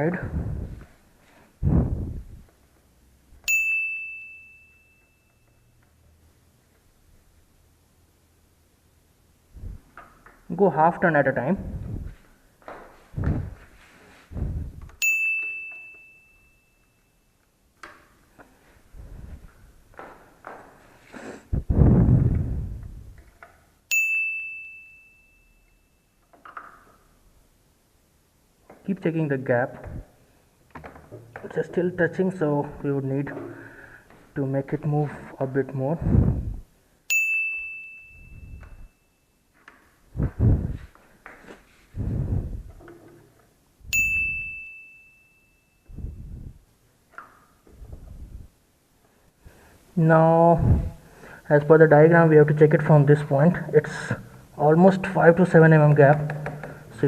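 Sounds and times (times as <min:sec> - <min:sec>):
wrench ringing on metal: 0:03.5 - 0:05.8, 0:15.0 - 0:17.2, 0:23.9 - 0:26.2, 0:37.1 - 0:39.2, 0:43.9 - 0:45.9.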